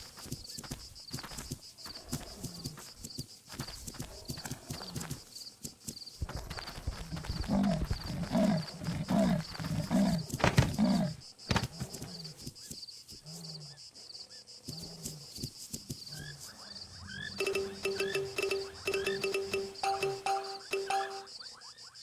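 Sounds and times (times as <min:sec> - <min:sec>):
high repeating chirp: 0:17.4 - 0:21.5.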